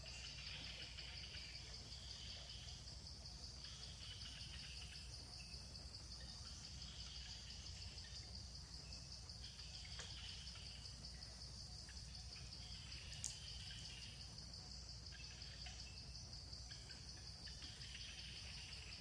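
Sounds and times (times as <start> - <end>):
insect chorus drone: 0.0 - 19.0
faint ticks: 9.8 - 10.6, 13.0 - 14.1.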